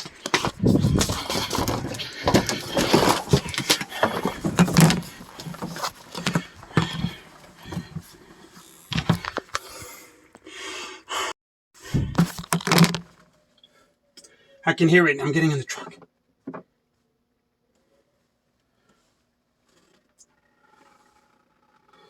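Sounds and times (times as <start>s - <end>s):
knocks and bumps: 0.0s - 8.1s
rustling: 0.0s - 9.8s.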